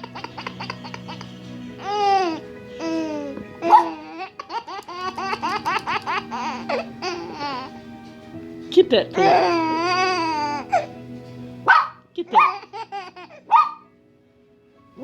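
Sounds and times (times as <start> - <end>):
baby laughing: 0.0 - 7.8, 9.2 - 11.0, 12.3 - 13.8
background music: 0.0 - 15.0.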